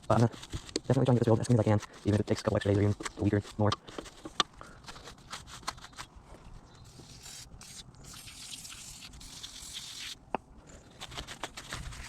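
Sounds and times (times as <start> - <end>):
brush scrubbing metal frame: 0.0 - 6.0, 6.9 - 10.2.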